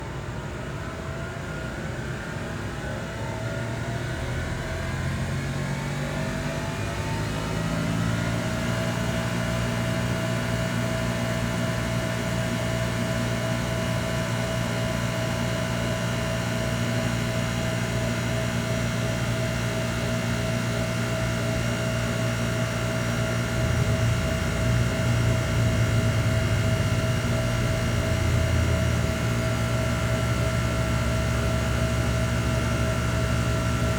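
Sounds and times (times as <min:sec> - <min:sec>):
bus drivetrain whine: 0:00.0 - 0:33.9
low hum: 0:23.1 - 0:33.9.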